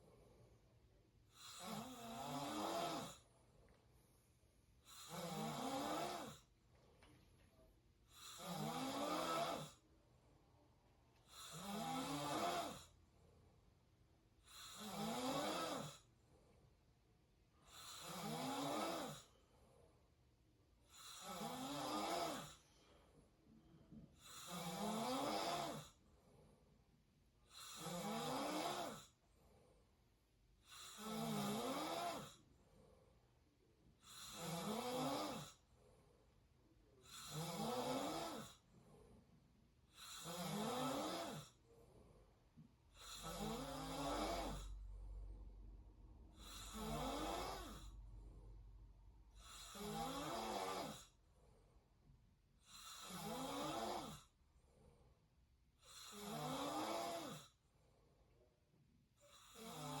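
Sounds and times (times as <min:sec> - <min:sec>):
quiet breathing: 0:00.0 - 1:00.0
person snoring: 0:01.3 - 0:03.2, 0:04.8 - 0:06.5, 0:08.1 - 0:09.8, 0:11.3 - 0:12.9, 0:14.4 - 0:16.1, 0:17.6 - 0:19.4, 0:20.9 - 0:22.7, 0:24.2 - 0:26.0, 0:27.5 - 0:29.2, 0:30.6 - 0:32.4, 0:34.0 - 0:35.6, 0:37.0 - 0:38.6, 0:39.9 - 0:41.6, 0:42.9 - 0:44.9, 0:46.3 - 0:48.0, 0:49.4 - 0:51.2, 0:52.6 - 0:54.3, 0:55.8 - 0:57.6, 0:59.2 - 1:00.0.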